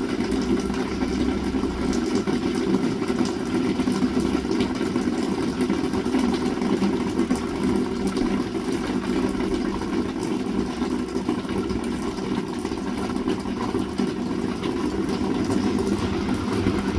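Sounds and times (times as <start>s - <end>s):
heavy rain falling: 0.1s - 4.8s, 13.0s - 16.9s.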